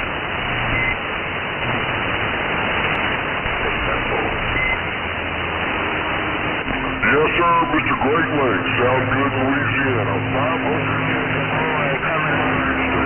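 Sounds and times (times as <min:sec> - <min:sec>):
radio static hiss: 0:00.0 - 0:13.0
short high beeps: 0:04.5 - 0:04.8
faint distant radio voices: 0:06.6 - 0:13.0.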